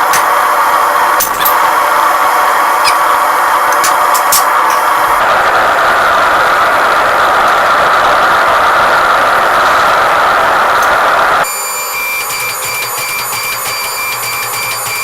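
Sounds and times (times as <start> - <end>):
forge roaring: 0.0 - 11.5.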